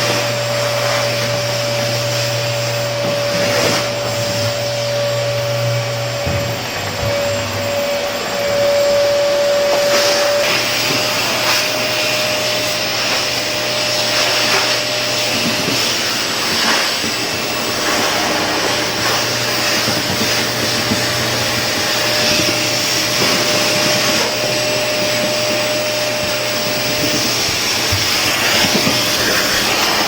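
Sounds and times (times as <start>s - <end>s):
vacuum cleaner running: 0.0s - 30.0s.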